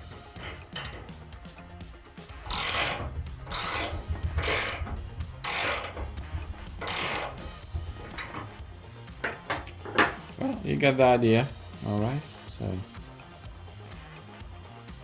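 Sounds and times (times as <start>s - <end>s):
ratchet wrench clicking: 0.0s - 1.8s, 2.4s - 8.6s.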